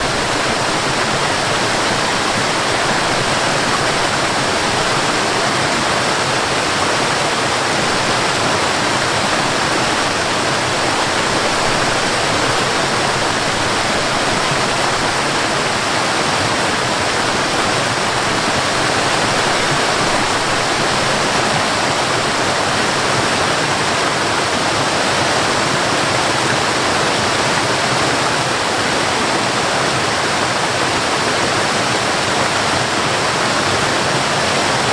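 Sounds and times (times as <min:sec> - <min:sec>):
water falling and splashing: 0:00.0 - 0:24.9.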